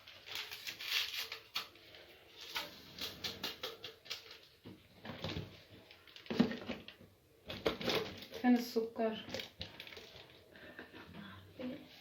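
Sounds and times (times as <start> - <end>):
kitchen items tapping and scraping: 2.4 - 11.2.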